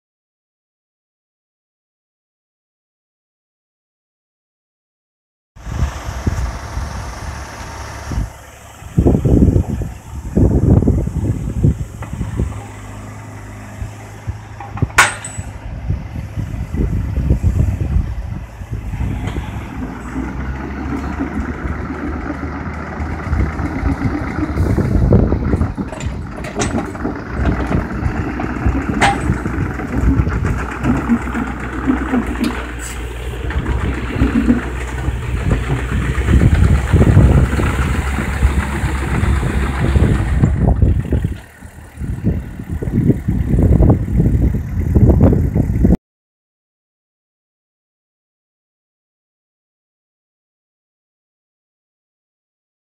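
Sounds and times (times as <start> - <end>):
diesel engine running: 5.6 - 46.0.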